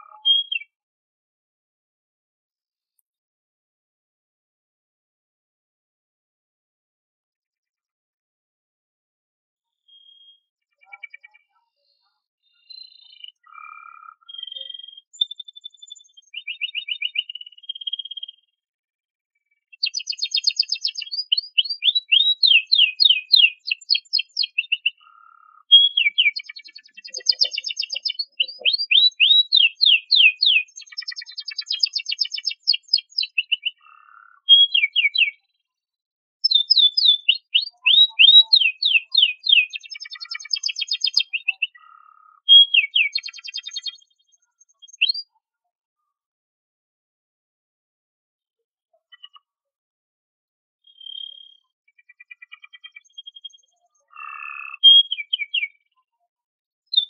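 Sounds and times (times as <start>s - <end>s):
canary singing trills: 0.0s - 0.8s, 9.8s - 18.4s, 19.7s - 35.5s, 36.4s - 45.4s, 50.9s - 55.9s.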